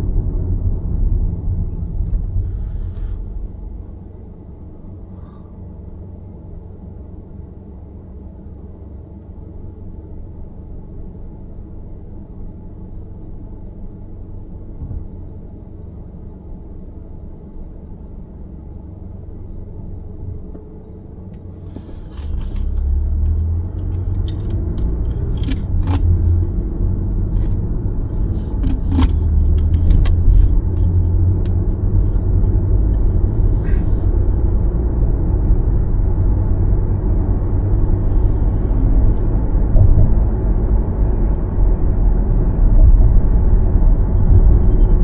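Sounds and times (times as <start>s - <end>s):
road and tyre noise: 0.0s - 45.0s.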